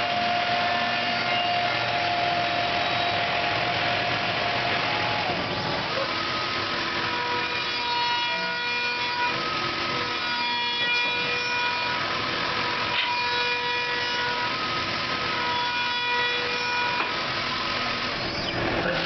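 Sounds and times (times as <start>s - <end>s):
router spindle whine: 0.0s - 13.1s.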